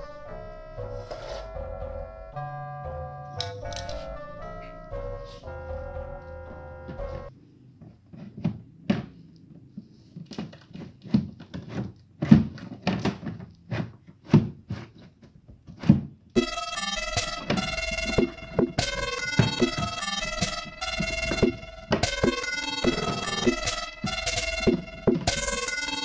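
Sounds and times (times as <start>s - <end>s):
background music: 0.0s - 7.3s, 16.4s - 26.0s
irregular thuds and knocks: 5.9s - 9.2s, 10.2s - 16.5s, 17.1s - 25.7s.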